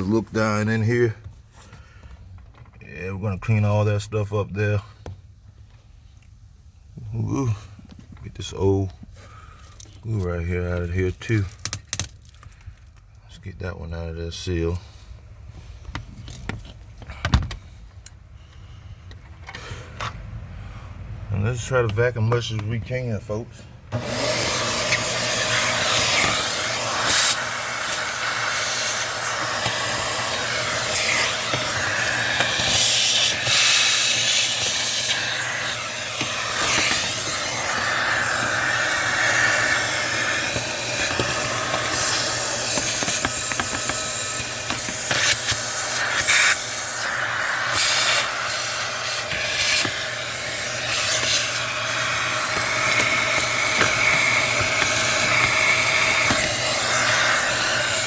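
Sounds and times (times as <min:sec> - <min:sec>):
vacuum cleaner running: 0:23.9 - 0:58.0.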